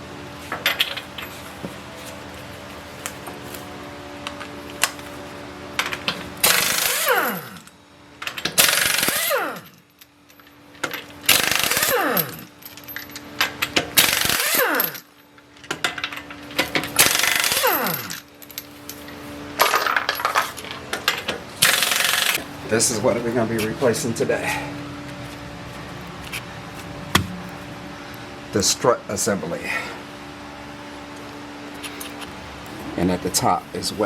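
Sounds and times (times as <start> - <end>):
impact wrench hammering: 27.1 - 27.4.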